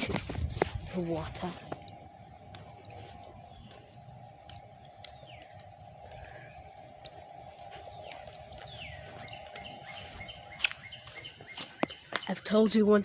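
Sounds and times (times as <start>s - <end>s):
steady low hum: 0.0s - 13.0s
birds whistling and chirping: 2.7s - 12.4s.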